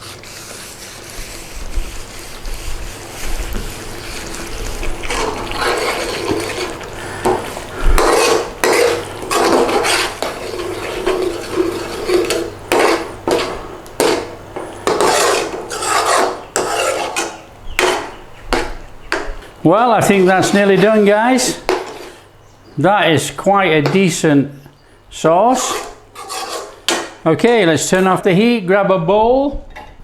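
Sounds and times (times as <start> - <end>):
utensil scraping a pan: 0.0 - 22.3, 25.4 - 28.2.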